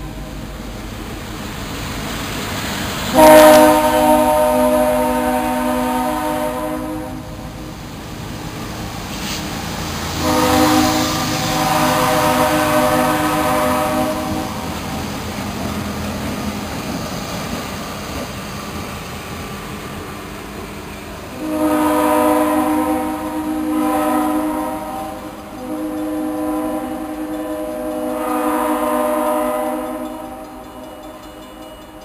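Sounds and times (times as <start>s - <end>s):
locomotive air horn blasts: 3.1s - 7.4s, 10.2s - 14.7s, 21.3s - 30.6s.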